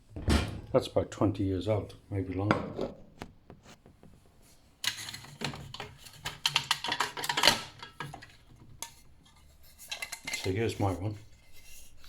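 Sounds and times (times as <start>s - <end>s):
metal flask clicking and clattering: 4.8s - 8.3s.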